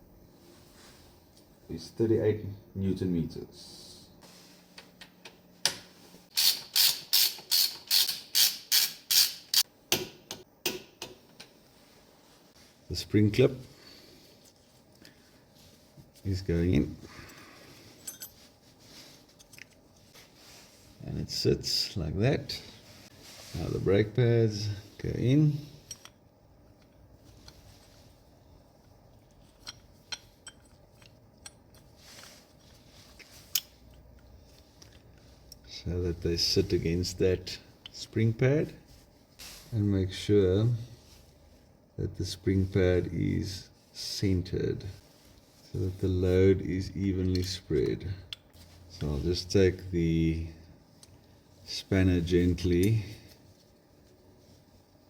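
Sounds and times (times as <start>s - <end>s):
ratchet wrench clicking: 6.3s - 9.6s.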